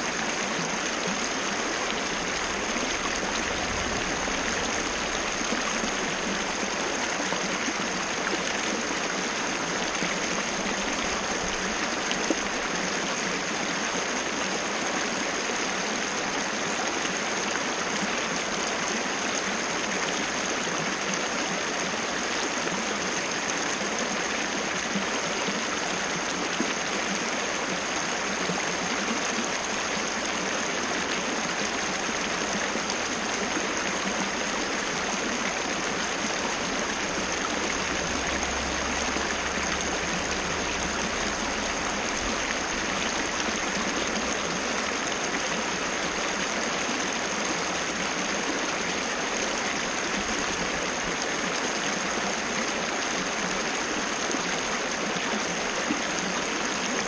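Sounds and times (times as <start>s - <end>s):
waterfall rushing: 0.0s - 12.7s, 29.1s - 51.8s.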